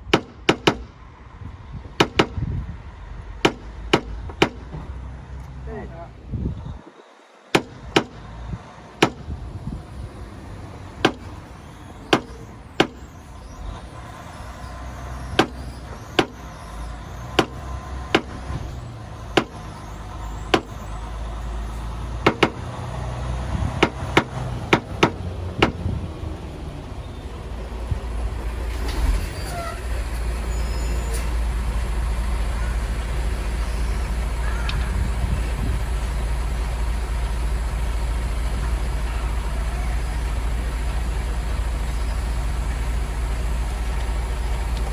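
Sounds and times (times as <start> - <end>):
low rumble: 25.2 - 44.9.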